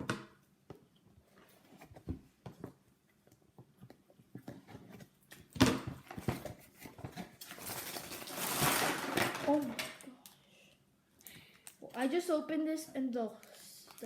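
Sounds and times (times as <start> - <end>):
cardboard and plastic rustling: 4.3 - 10.0.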